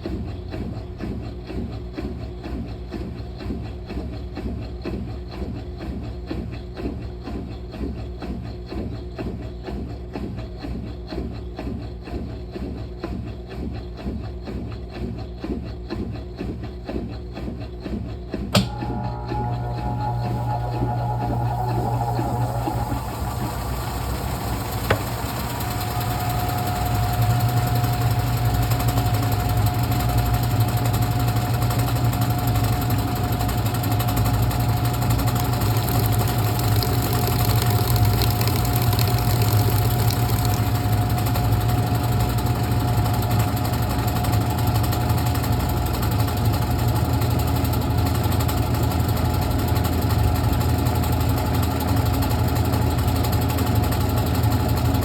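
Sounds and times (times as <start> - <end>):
washing machine whine: 18.3 - 55.0
washing machine motor hum: 18.4 - 55.0
washing machine click: 18.6 - 19.0.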